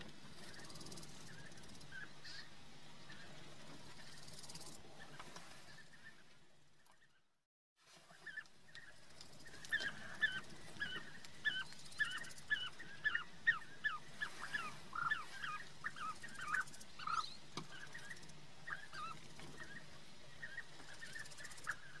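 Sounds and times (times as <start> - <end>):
birds rolling calls: 8.1 - 22.0.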